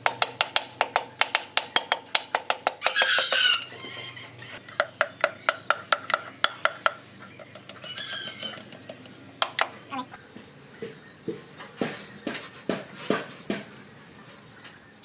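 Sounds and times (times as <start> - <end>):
rapid metal hammering: 0.0 - 3.6, 4.6 - 10.0
rooster crowing: 2.8 - 4.6, 7.7 - 8.9.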